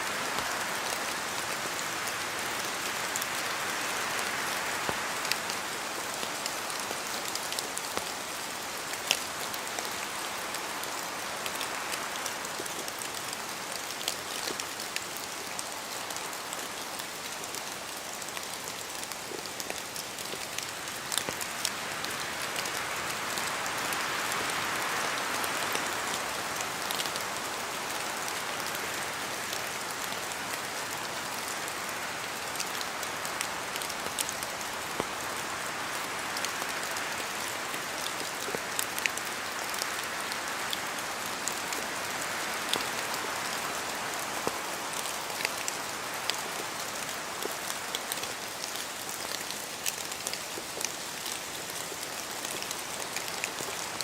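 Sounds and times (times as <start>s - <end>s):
rain pattering on leaves: 0.0s - 54.0s.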